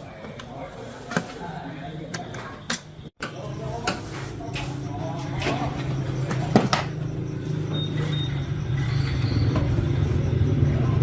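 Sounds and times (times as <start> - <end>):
short high beeps: 3.4 - 10.4.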